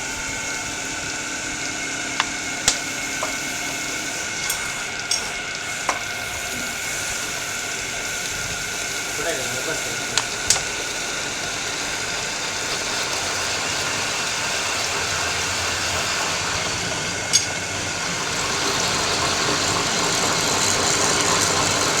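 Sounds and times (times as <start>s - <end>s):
workshop machine running: 0.0s - 22.0s.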